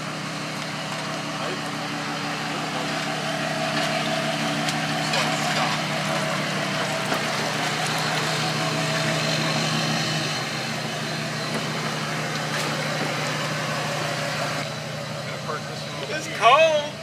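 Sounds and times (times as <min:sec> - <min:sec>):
vehicle engine idling: 0:00.0 - 0:17.0.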